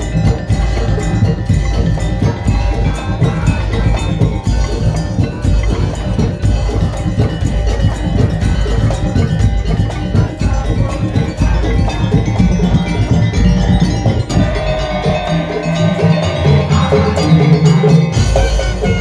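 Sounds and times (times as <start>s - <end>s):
fast dense drumming: 0.0s - 19.0s
pitched metal percussion melody: 0.0s - 19.0s.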